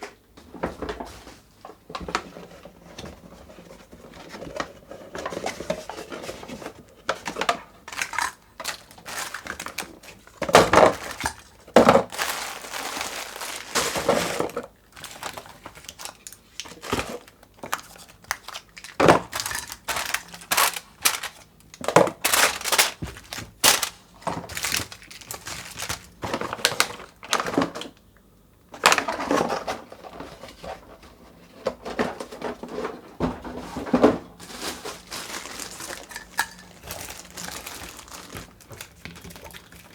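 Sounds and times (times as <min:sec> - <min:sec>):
plastic wrappers crinkling: 0:04.4 - 0:28.0, 0:33.8 - 0:39.9.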